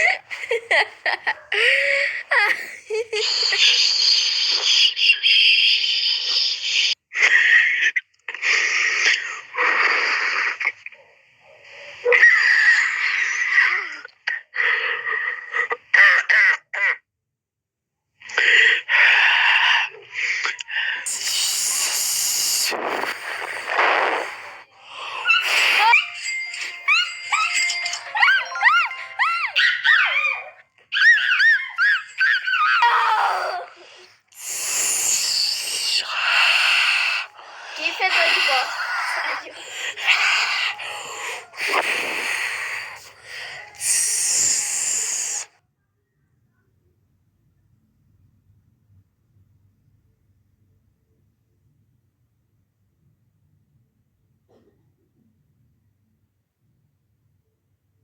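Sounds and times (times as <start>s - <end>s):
harsh raspy animal calls: 18.4s - 45.5s.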